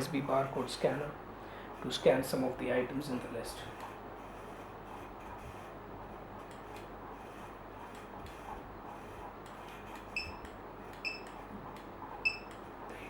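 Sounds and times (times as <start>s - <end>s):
barcode scanner beeps: 10.1s - 11.4s, 12.2s - 12.5s.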